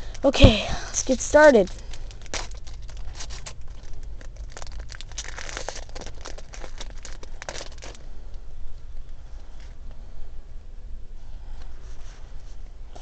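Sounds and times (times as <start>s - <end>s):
foil wrapper crinkling and tearing: 0.9s - 8.4s.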